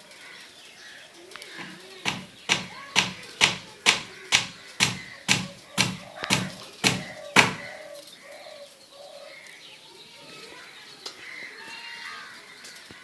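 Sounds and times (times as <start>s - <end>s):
pigeon cooing: 5.1s - 9.3s.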